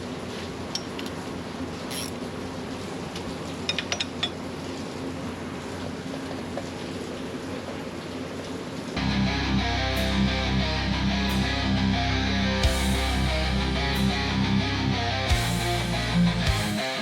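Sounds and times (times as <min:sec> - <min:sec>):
workshop hum: 0:00.0 - 0:07.8, 0:08.9 - 0:17.0
rock music with electric guitar: 0:09.0 - 0:17.0.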